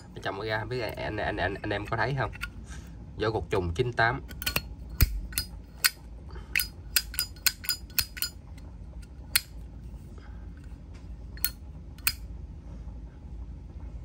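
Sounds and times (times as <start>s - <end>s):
lighter metal clicks: 4.3s - 8.4s, 9.3s - 9.5s, 11.4s - 12.2s.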